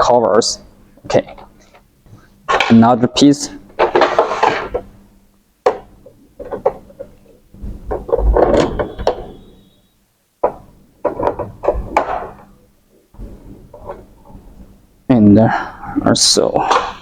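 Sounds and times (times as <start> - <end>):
hard plastic clicking and scraping: 5.7 - 9.3.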